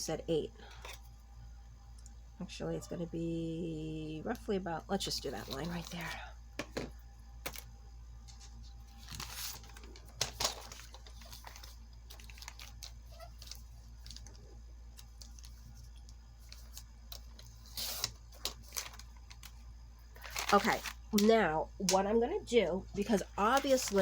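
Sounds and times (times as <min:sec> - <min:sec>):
low steady hum: 0:00.0 - 0:24.0
paper rustling: 0:08.2 - 0:14.4, 0:15.0 - 0:21.4, 0:23.0 - 0:24.0.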